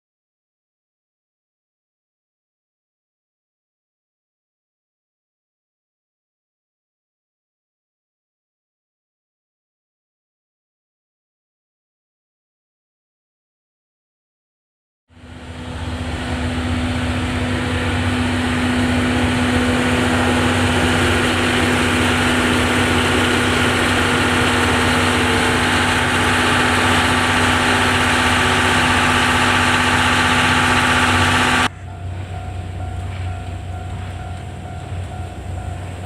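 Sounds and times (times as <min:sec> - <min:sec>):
steam locomotive hiss and hum: 0:15.2 - 0:36.0.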